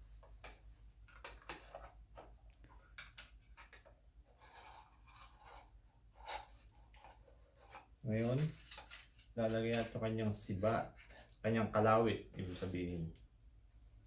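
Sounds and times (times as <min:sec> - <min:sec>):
plastic parts rustling: 0:00.2 - 0:05.5, 0:06.2 - 0:10.0
plastic parts clicking: 0:08.4 - 0:10.0.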